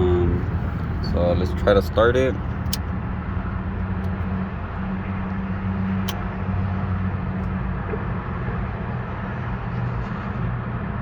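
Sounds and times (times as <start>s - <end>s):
ignition key click: 2.5s - 2.9s.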